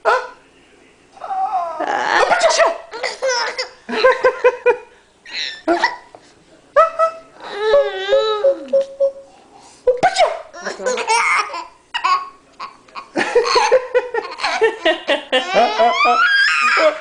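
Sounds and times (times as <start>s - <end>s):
baby laughing: 2.2s - 4.2s, 10.6s - 17.0s.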